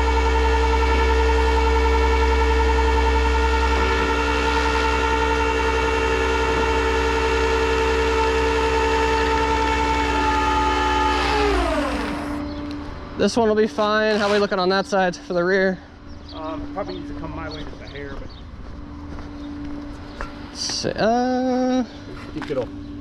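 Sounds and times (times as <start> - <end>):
winch motor whining: 0.0 - 14.9.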